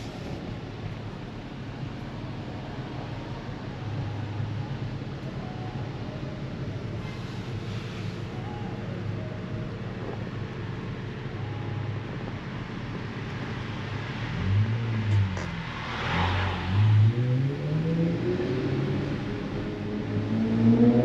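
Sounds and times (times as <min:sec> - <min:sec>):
car engine revving: 0:14.1 - 0:21.0.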